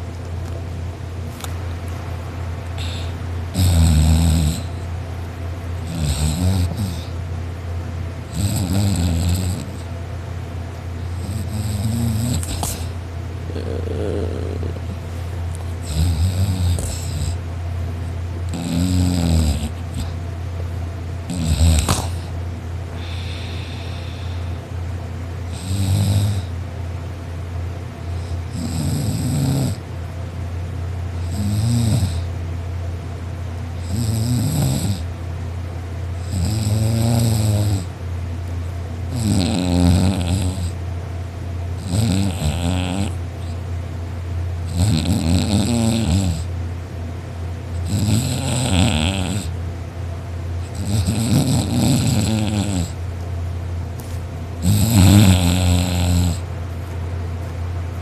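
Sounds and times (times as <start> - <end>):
steady low hum: 0.0 - 58.0
person snoring loudly: 2.8 - 4.8, 5.8 - 7.1, 8.3 - 9.9, 11.1 - 12.9, 13.5 - 15.0, 15.8 - 17.4, 18.5 - 20.1, 21.3 - 22.3, 23.0 - 24.6, 25.5 - 26.5, 28.5 - 29.8, 31.2 - 32.3, 33.8 - 35.1, 36.2 - 37.9, 39.1 - 40.8, 41.8 - 43.2, 44.7 - 46.5, 47.8 - 49.6, 50.7 - 53.0, 54.6 - 56.5.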